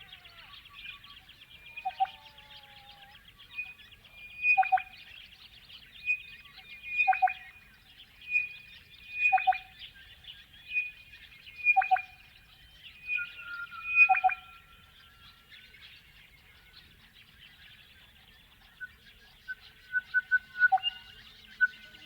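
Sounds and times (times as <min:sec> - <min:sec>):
bellbird singing ringing notes: 0:13.0 - 0:15.5.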